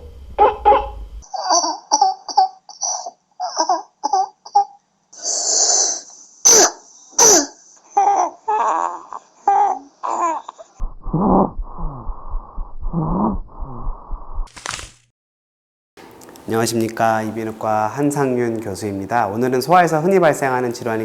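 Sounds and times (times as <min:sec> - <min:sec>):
child noisy breath: 0:05.2 - 0:07.9
child barking cough: 0:06.4 - 0:07.6.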